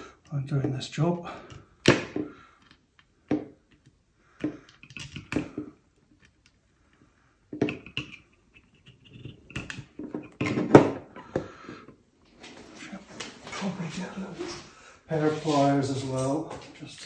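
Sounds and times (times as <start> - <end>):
tools knocking and clicking: 1.5 - 6.6, 7.5 - 11.5.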